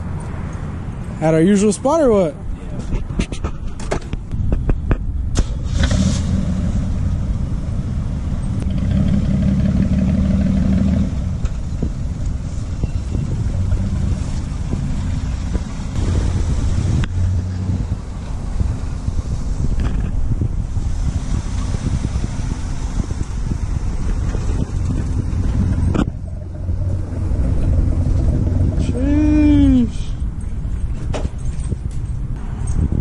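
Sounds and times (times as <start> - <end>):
car engine running: 19.8 - 31.0.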